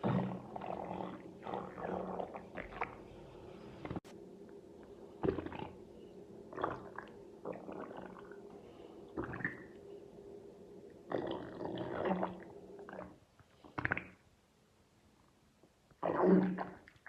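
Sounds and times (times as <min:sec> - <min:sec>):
stomach growling and gurgling: 0:00.0 - 0:03.2, 0:05.2 - 0:09.8, 0:10.9 - 0:14.3, 0:16.0 - 0:17.0
faint steady hum: 0:00.0 - 0:17.0.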